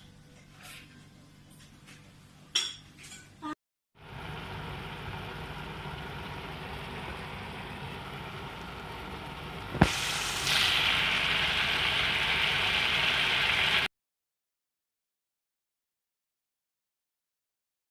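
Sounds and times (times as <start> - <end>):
food sizzling in a pan: 4.0 - 13.9.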